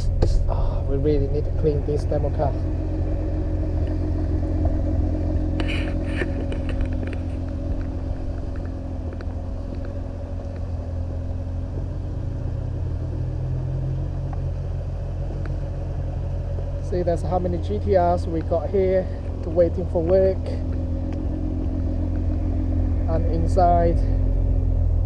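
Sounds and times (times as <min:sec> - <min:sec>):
car engine idling: 0:00.0 - 0:25.0
light clicks and rattles: 0:05.5 - 0:10.8.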